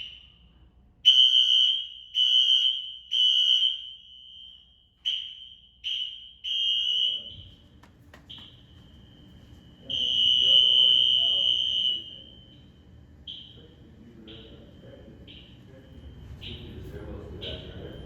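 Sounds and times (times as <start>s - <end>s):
fire alarm horn blasts: 0.0s - 18.0s.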